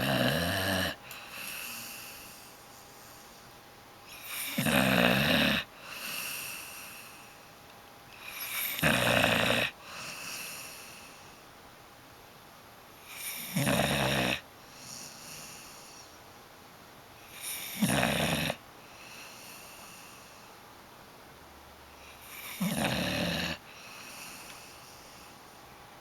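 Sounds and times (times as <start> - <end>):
dog snoring: 0.0 - 3.4, 4.1 - 7.4, 8.2 - 11.2, 13.0 - 16.1, 17.2 - 20.5, 22.0 - 25.3.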